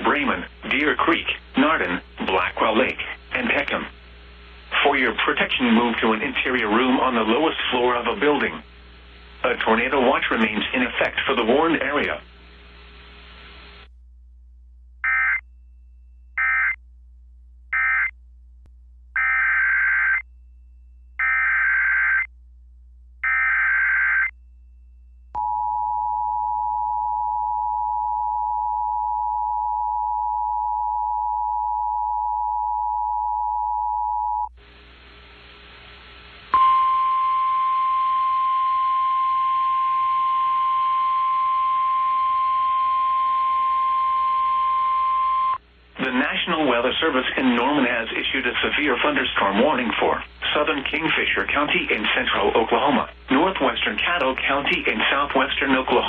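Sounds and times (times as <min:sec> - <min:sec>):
hum: 0:00.0 - 0:56.0
steady warning alarm tone: 0:15.0 - 0:16.8, 0:17.7 - 0:18.1, 0:19.2 - 0:22.3, 0:23.2 - 0:34.5, 0:36.5 - 0:45.6
screechy data bursts: 0:19.2 - 0:20.2, 0:21.2 - 0:22.3, 0:23.2 - 0:24.3
two-tone attention signal: 0:36.6 - 0:45.6.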